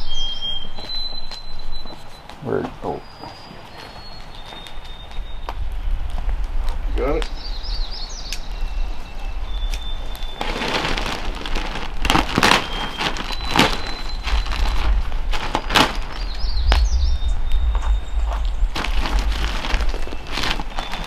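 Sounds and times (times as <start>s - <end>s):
steady low rumble: 13.8s - 21.0s.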